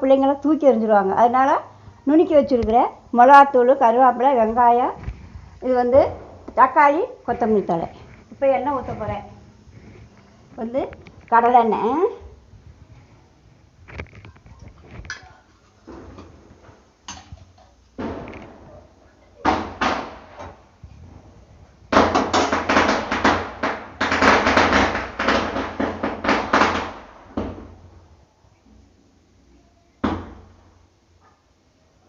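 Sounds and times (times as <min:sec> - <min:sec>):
pots and utensils clattering: 0:14.8 - 0:18.4.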